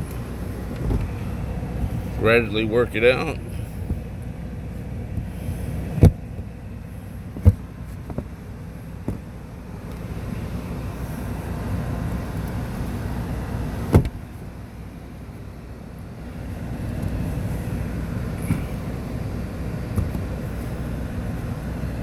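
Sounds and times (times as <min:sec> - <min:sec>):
steady low rumble: 0:00.0 - 0:22.0.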